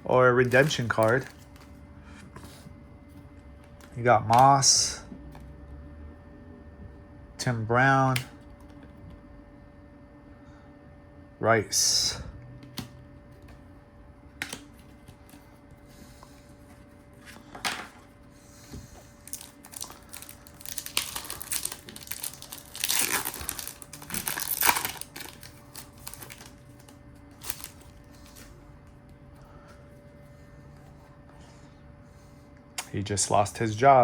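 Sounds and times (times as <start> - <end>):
foil wrappers crinkling and tearing: 0.4 - 1.6, 19.2 - 28.5.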